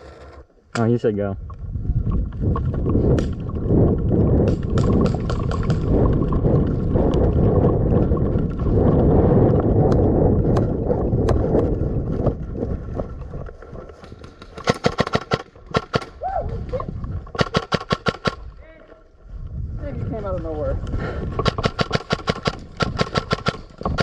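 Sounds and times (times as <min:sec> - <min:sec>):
wind noise on microphone: 0:00.9 - 0:24.0
airsoft rifle rapid shots: 0:14.6 - 0:16.1, 0:17.4 - 0:18.4, 0:21.4 - 0:24.0.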